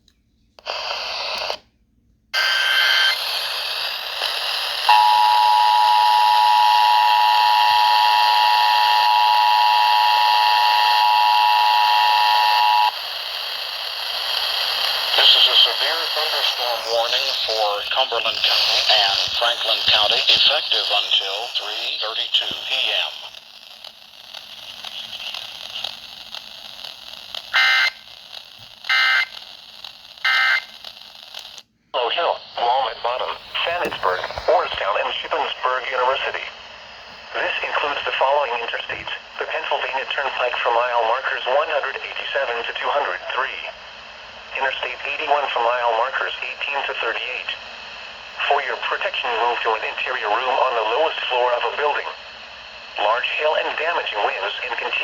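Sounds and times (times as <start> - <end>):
radio static hiss: 0.6 - 1.6, 2.4 - 55.0
two-tone attention signal: 4.9 - 12.9
digital header data burst: 15.2 - 23.2, 27.5 - 28.1, 28.9 - 29.3
buzzy digital data squawks: 27.1 - 28.3, 28.9 - 29.5, 30.2 - 31.4.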